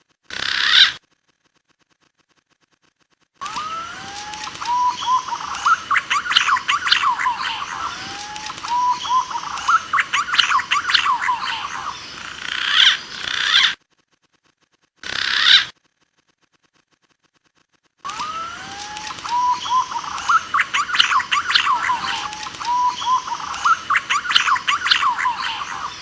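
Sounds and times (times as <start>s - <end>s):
chatter of sharp chirps: 3.4s - 13.8s, 15.0s - 15.7s, 18.1s - 26.0s
rising whistled pigeon calls: 3.4s - 13.8s, 18.1s - 26.0s.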